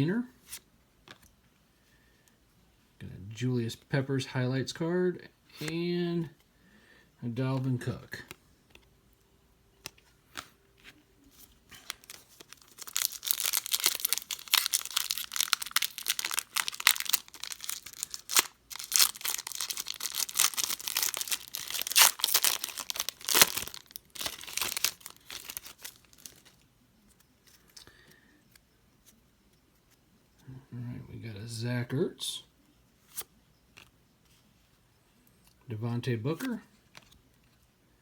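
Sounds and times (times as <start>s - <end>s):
plastic wrapper tearing and crinkling: 11.7s - 26.6s.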